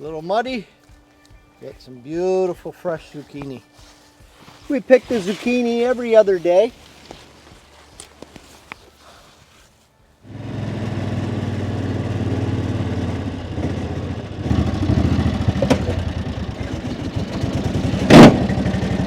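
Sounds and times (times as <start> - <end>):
vehicle engine running: 10.3 - 19.0.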